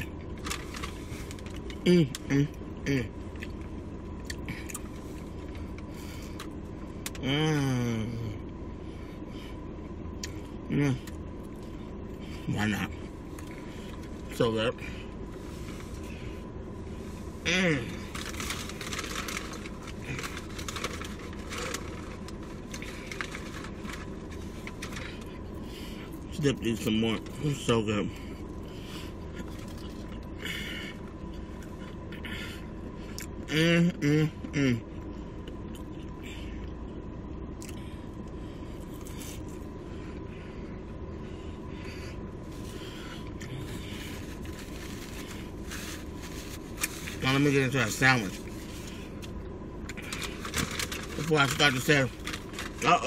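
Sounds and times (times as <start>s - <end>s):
low hum: 0.0s - 53.0s
person chewing fried food: 3.3s - 7.2s, 37.5s - 39.7s.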